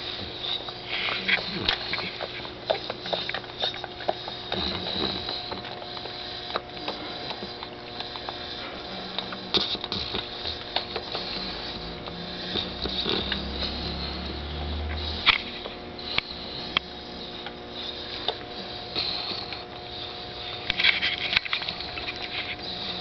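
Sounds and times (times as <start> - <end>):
pet mouth clicking and smacking: 0.4 - 8.6, 9.2 - 11.3.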